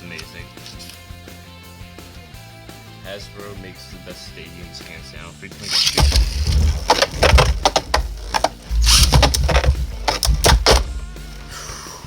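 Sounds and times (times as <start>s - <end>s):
tops spinning and grinding: 5.6s - 11.1s.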